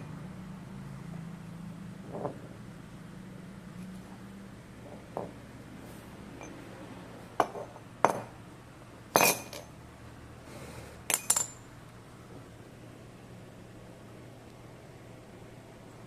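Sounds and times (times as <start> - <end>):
metallic clinks: 11.1 - 11.6.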